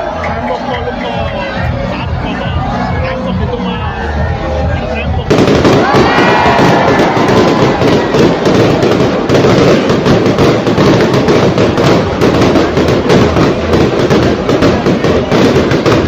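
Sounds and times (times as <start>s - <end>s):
fireworks bangs and crackling: 4.8s - 16.0s.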